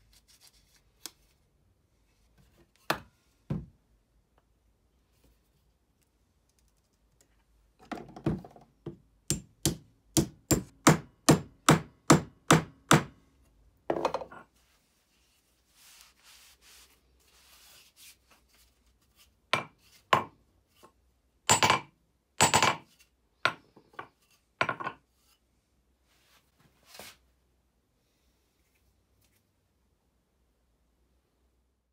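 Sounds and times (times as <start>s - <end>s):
hammer striking wood: 8.9s - 13.2s.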